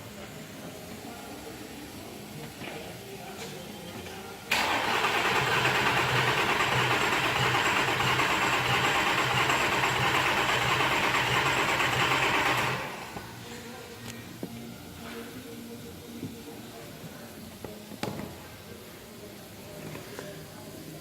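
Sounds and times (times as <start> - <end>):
engine cranking on starter: 4.5 - 13.1.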